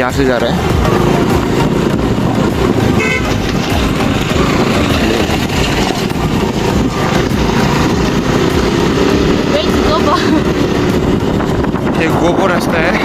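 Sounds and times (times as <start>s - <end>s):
moving vehicle rumble: 0.0s - 13.0s
horn toot: 2.9s - 3.6s.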